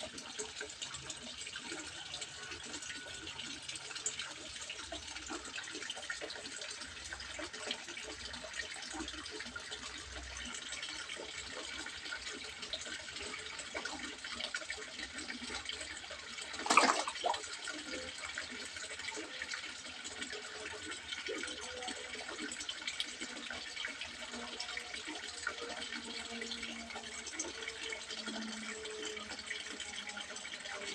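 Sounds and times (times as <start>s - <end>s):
water trickling into pond: 0.0s - 30.9s.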